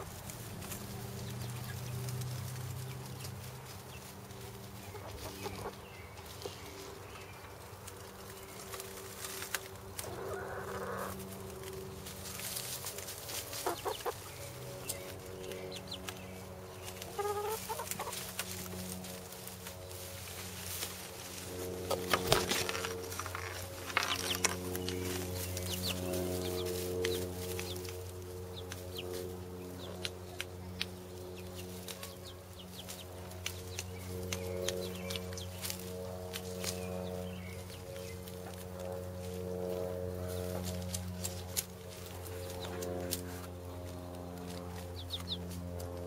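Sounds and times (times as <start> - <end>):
chickens clucking: 0.0 - 46.0
steady low hum: 0.0 - 46.0.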